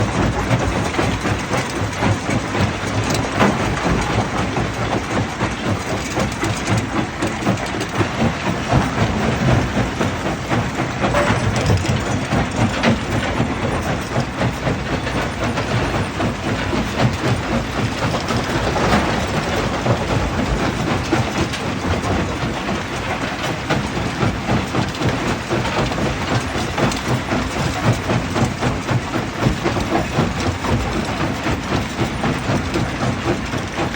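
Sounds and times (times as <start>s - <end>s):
dump truck unloading rock: 6.3s - 15.6s.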